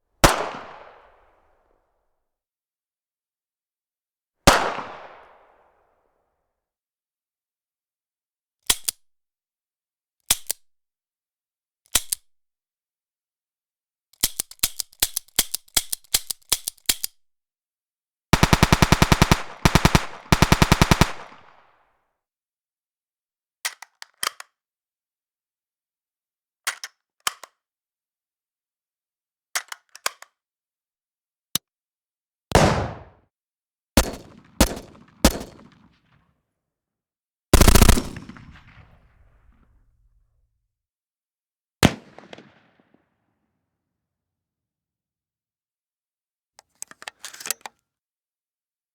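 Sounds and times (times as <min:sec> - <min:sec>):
pistol gunshots: 0:18.4 - 0:21.5, 0:32.5 - 0:33.2, 0:34.0 - 0:35.6, 0:37.6 - 0:38.8
rapid automatic gunfire: 0:18.4 - 0:21.5, 0:37.6 - 0:38.6.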